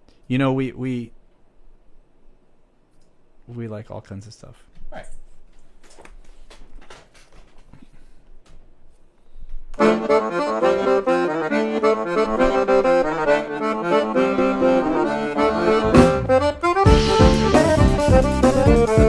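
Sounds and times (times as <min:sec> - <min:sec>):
accordion music: 0:09.8 - 0:19.0.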